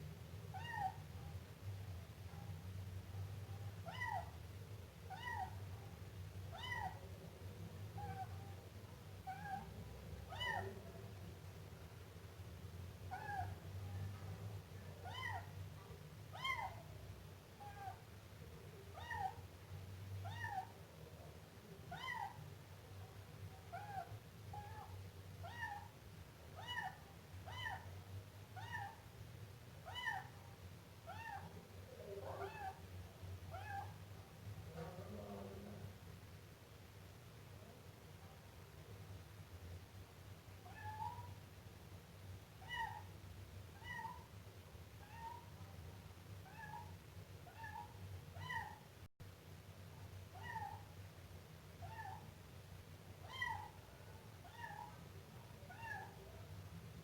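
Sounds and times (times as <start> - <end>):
kitten meowing: 5.1 - 5.6, 6.6 - 7.0, 10.3 - 10.7, 15.0 - 15.5, 19.0 - 19.4, 29.8 - 30.3, 31.1 - 31.5, 42.6 - 43.1, 47.5 - 48.8, 50.4 - 50.8, 51.8 - 52.2, 53.2 - 53.8, 54.4 - 54.9, 55.7 - 56.2.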